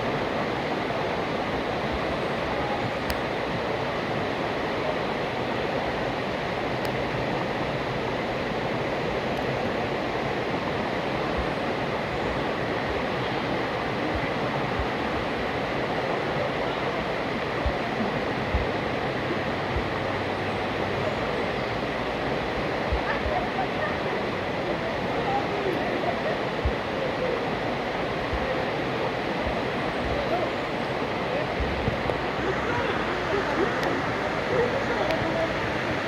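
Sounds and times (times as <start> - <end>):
river rushing: 0.0 - 36.0
soft low thumps: 18.5 - 18.8, 19.7 - 20.0, 22.9 - 23.4, 29.4 - 30.4, 31.6 - 32.9.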